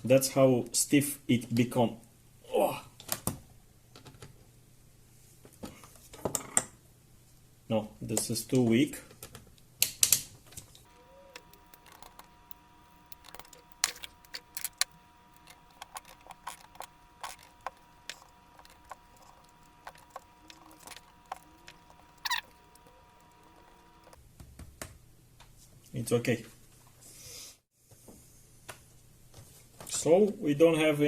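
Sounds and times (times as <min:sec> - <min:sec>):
faint steady hum: 0:10.9 - 0:24.2
laptop parts clicking: 0:10.9 - 0:24.2
plastic parts clattering: 0:10.9 - 0:24.2.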